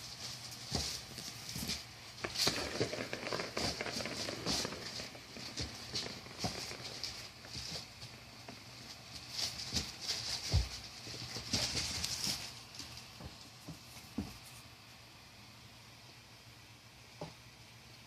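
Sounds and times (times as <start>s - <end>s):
kittens thumping and scrabbling: 0.2s - 14.6s.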